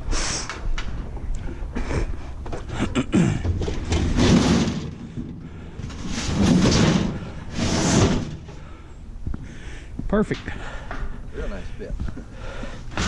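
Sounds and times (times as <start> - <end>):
scrap scraping into truck bed: 3.7 - 5.2, 5.9 - 8.5.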